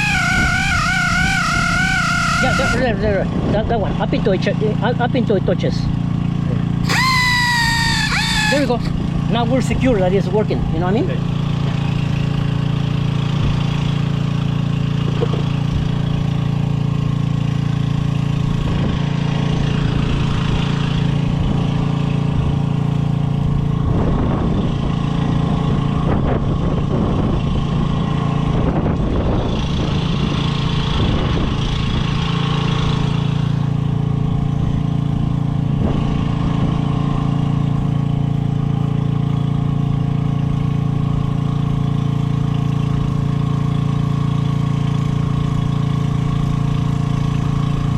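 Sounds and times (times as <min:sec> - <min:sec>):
motor humming: 0:00.0 - 0:02.8, 0:06.9 - 0:08.9.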